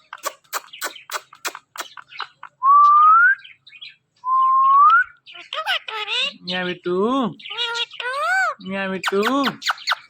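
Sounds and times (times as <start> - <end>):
parrot clicking chirps: 0.1 - 2.4.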